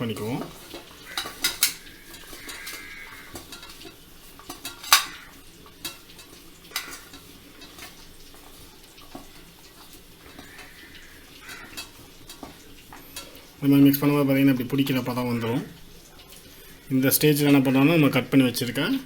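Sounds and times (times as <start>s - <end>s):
spoon scraping a bowl: 0.0s - 13.6s
utensil clinking against bowl: 0.0s - 16.5s.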